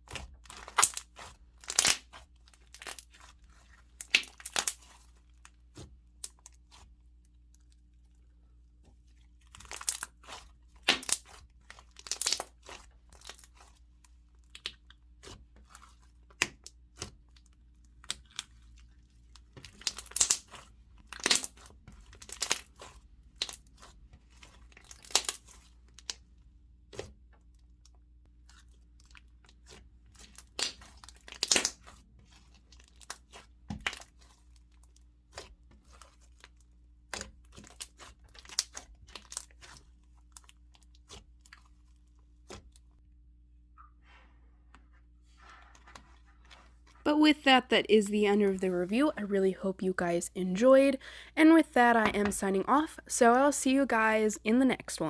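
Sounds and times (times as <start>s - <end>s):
slime crackling and popping: 0.1s - 6.9s, 9.4s - 13.8s, 14.4s - 26.2s, 27.8s - 41.8s.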